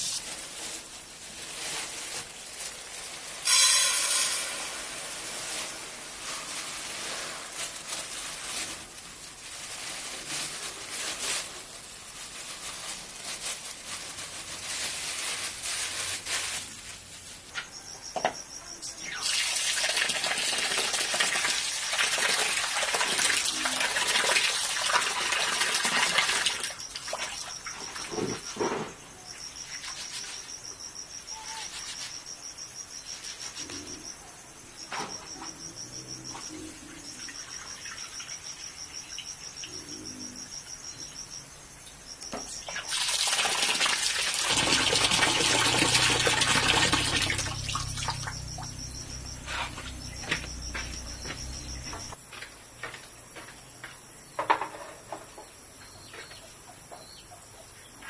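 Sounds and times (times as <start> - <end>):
crickets chirping: 0.0 - 58.0
rushing hiss: 3.4 - 8.8.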